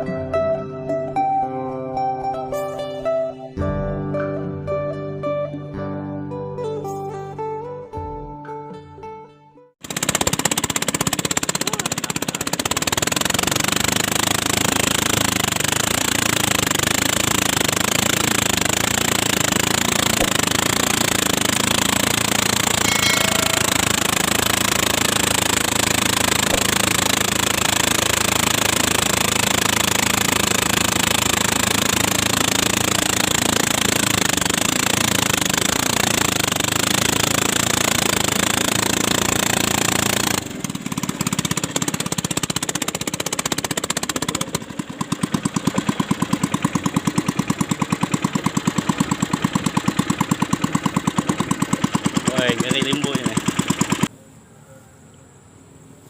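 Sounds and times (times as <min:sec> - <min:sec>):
boat engine running: 0:09.8 - 0:54.1.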